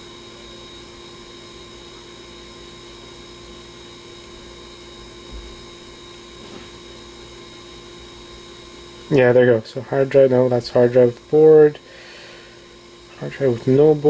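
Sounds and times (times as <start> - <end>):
electrical hum and hiss: 0.0 - 14.0
soft low thump: 5.3 - 5.6.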